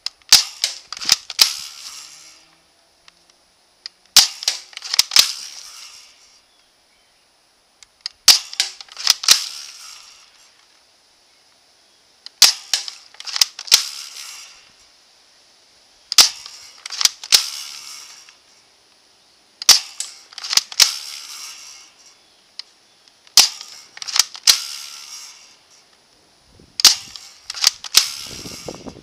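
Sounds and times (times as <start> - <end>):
rifle being cocked: 0.0 - 2.2, 4.1 - 6.1, 8.0 - 10.2, 12.3 - 14.6, 16.1 - 18.4, 19.6 - 21.8, 23.3 - 25.6, 26.8 - 28.7
airsoft rifle shots: 0.2 - 2.2, 4.1 - 6.1, 8.1 - 10.3, 12.3 - 14.6, 16.1 - 18.3, 19.6 - 21.6, 23.3 - 25.2, 26.8 - 28.9.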